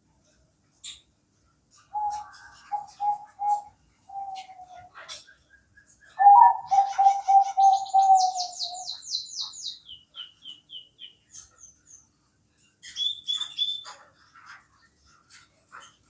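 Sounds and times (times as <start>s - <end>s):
songbird chirping: 1.7s - 12.2s, 12.8s - 14.0s
dove cooing: 1.9s - 5.2s, 6.1s - 9.0s.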